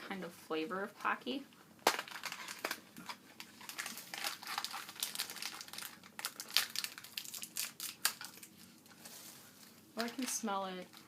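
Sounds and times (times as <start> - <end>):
plastic wrapper crinkling: 1.8 - 11.0.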